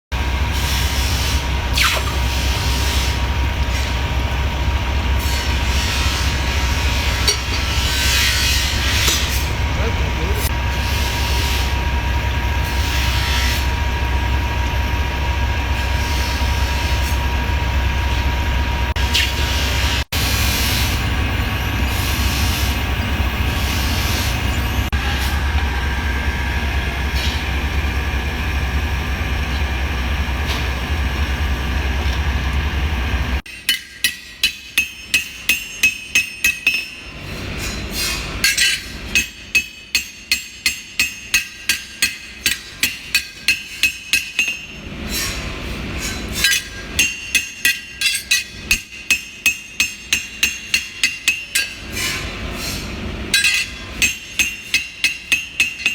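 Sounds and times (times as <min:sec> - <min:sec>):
hammer striking metal: 0:07.0 - 0:09.5, 0:33.4 - 0:44.8, 0:46.3 - 0:55.9.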